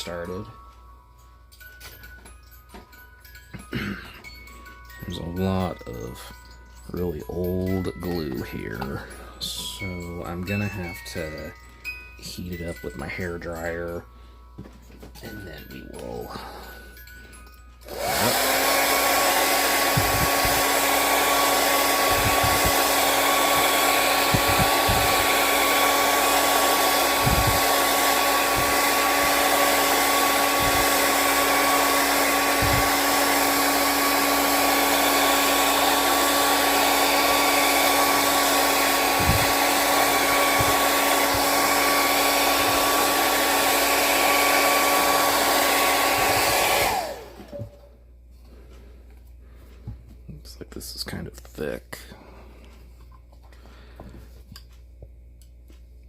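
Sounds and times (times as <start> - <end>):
hair dryer blowing: 0.0 - 0.6, 3.6 - 13.8, 17.8 - 47.9.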